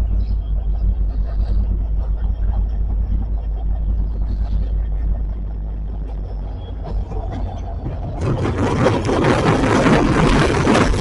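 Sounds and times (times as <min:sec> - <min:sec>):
diesel locomotive rumble: 0:00.0 - 0:11.0
loud rushing noise: 0:07.8 - 0:11.0.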